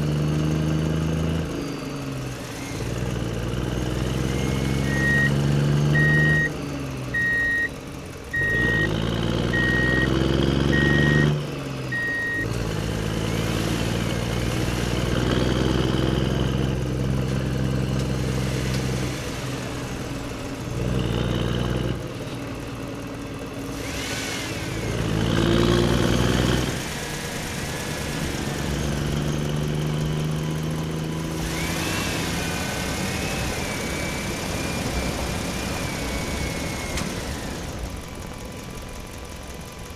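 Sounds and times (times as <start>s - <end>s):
truck engine idling and revving: 0.0s - 39.9s
reversing beeper: 4.3s - 12.5s.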